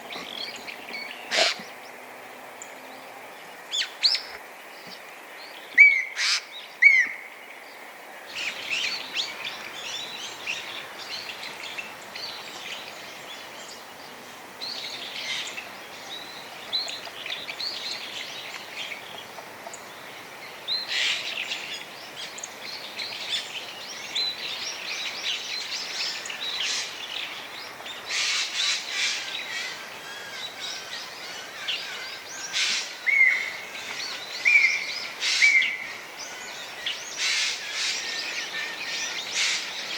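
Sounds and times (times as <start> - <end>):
jay calling and chattering: 1.3 - 1.7.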